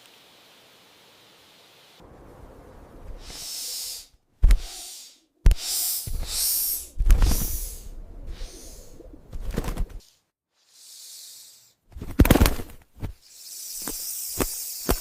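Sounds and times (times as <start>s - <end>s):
snake hissing: 3.2s - 9.3s, 10.1s - 11.9s, 13.1s - 15.0s.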